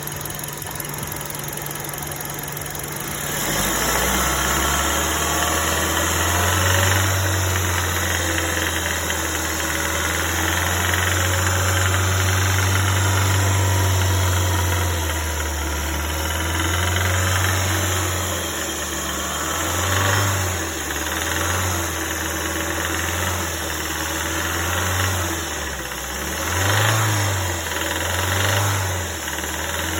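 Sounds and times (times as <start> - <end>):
car engine knocking: 0.0 - 18.8, 19.4 - 25.1.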